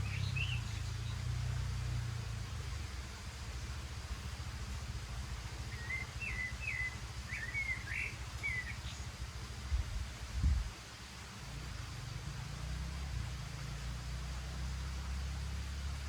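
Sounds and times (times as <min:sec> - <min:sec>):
small bird chirping: 0:00.0 - 0:01.7, 0:05.6 - 0:09.2
low steady rumble: 0:00.0 - 0:16.0.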